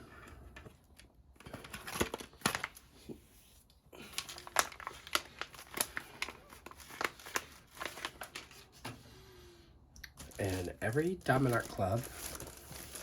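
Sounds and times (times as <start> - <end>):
plastic packaging crinkling: 0.9 - 3.0, 4.0 - 8.8, 10.1 - 13.0.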